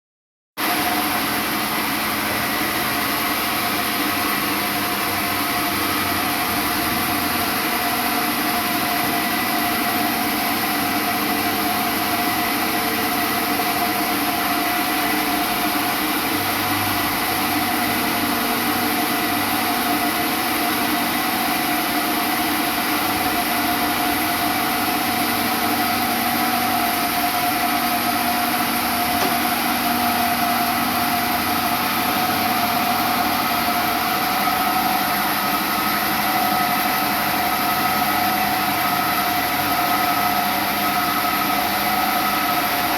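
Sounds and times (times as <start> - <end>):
sawmill machinery running: 0.6 - 42.9.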